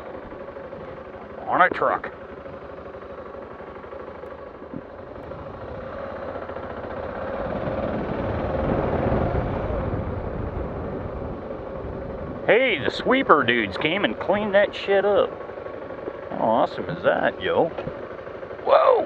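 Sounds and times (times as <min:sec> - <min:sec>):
steady engine hum: 0:00.0 - 0:19.0
motor vehicle passing by: 0:04.6 - 0:15.4.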